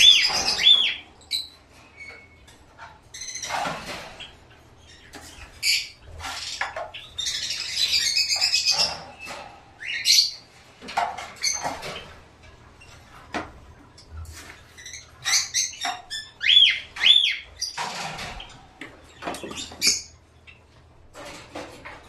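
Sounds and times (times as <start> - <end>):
small birds chirping: 0.0 - 10.6, 13.9 - 20.9.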